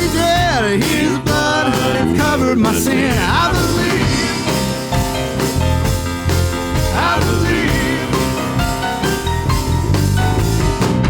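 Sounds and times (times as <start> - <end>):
people singing: 0.0 - 9.3
worship band music: 0.0 - 11.0.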